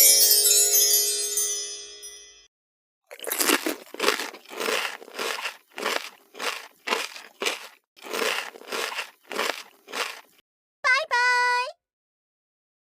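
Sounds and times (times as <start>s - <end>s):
crunchy food being chewed: 3.1s - 10.4s.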